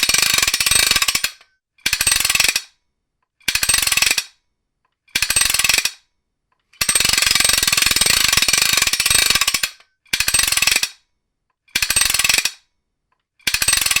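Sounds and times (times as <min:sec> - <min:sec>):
ratcheting wrench clicking: 0:00.0 - 0:02.7, 0:05.1 - 0:06.0, 0:06.8 - 0:11.0, 0:11.7 - 0:12.6, 0:13.4 - 0:14.0.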